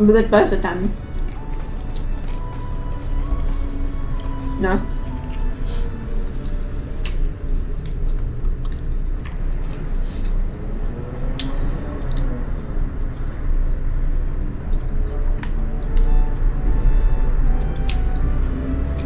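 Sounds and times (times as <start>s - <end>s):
wet chewing of food: 0.6s - 19.0s.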